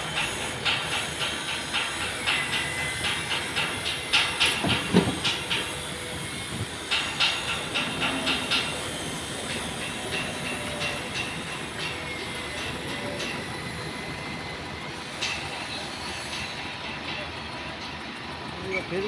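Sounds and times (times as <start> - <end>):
high-pitched metallic squeals: 0.0 - 16.7
hydraulic boom truck running: 0.0 - 18.3
metallic clanks: 0.2 - 5.9.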